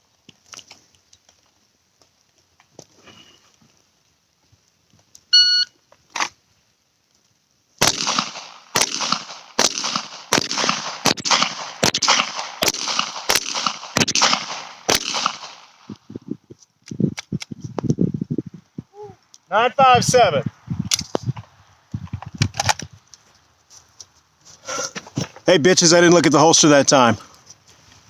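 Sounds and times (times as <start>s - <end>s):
shot timer beep: 5.4s - 5.7s
pistol shots: 7.8s - 15.9s.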